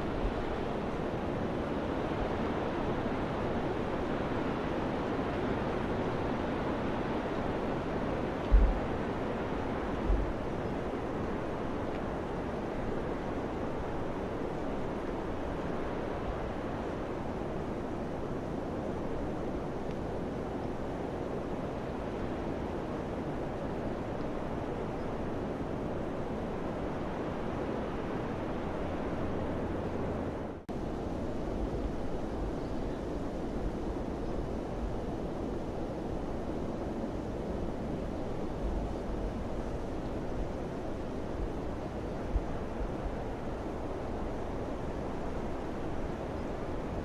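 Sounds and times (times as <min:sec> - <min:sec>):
wind gust thumping on microphone: 0:08.5 - 0:09.0.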